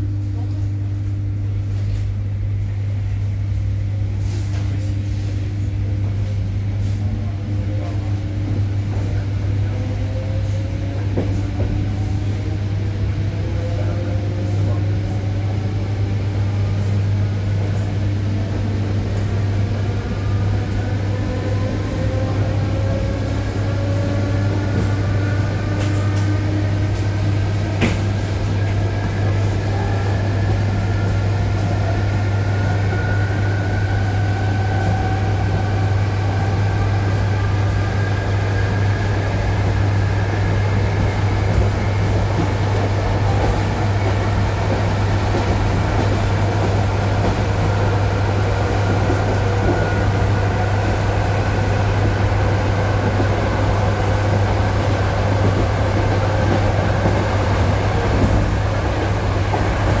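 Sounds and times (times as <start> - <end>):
wheels rumbling on jointed rail: 17.8 - 60.0.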